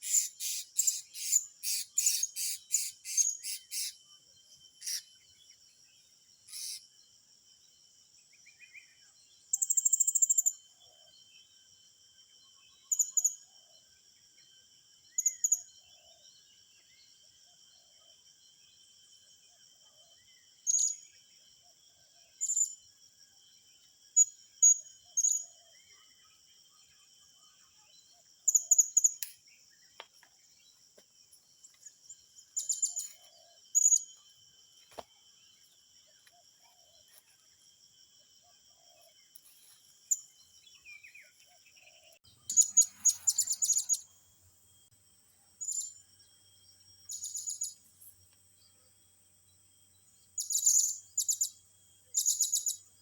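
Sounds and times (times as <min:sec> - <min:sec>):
high-pitched bird chirps: 0:00.0 - 0:03.9
high-pitched insect drone: 0:42.5 - 0:44.3.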